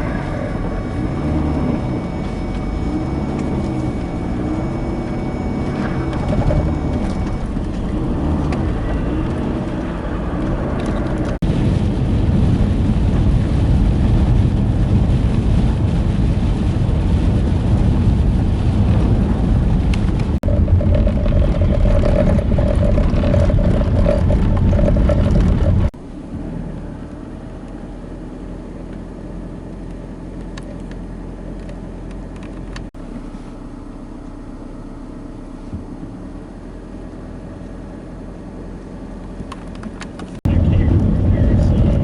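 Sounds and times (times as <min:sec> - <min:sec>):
wavering hum: 0:00.0 - 0:11.4, 0:20.0 - 0:28.1
wind noise: 0:00.0 - 0:26.0, 0:40.2 - 0:42.0
vehicle engine and tyre rumble: 0:00.0 - 0:42.0.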